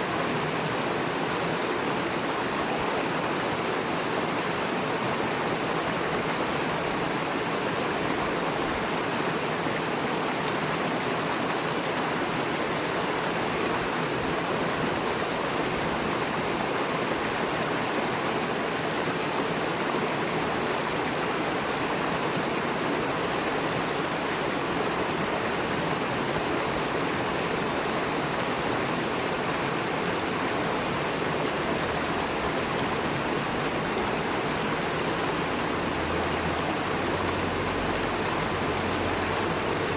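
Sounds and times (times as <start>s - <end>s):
river rushing over rocks: 0.0s - 39.9s.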